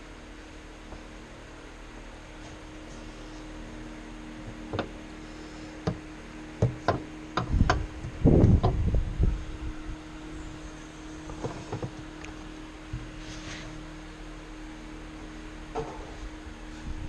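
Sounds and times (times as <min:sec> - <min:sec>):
steady hum: 0:00.0 - 0:17.0
knocks and clunks of tools: 0:04.7 - 0:04.9, 0:06.6 - 0:07.9, 0:11.3 - 0:12.0.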